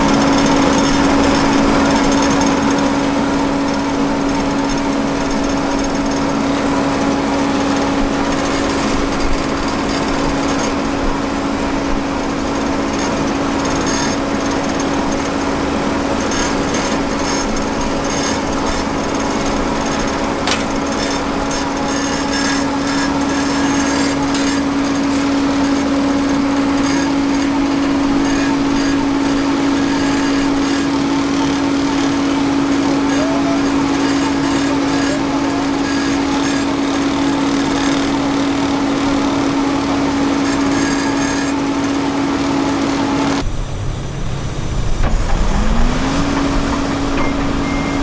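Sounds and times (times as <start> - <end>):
fast mechanical rattle: 0.0 - 48.0
paving machine drone: 0.0 - 48.0.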